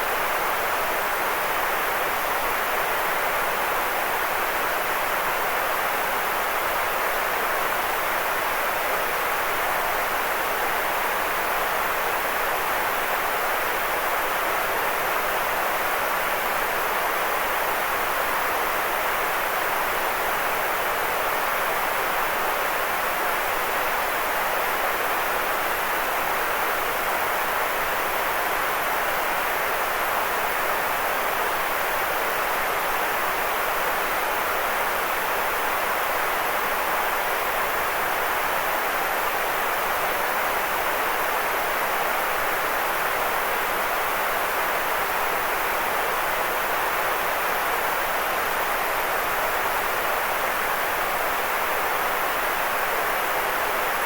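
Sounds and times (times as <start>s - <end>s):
white noise hiss: 0.0s - 54.0s.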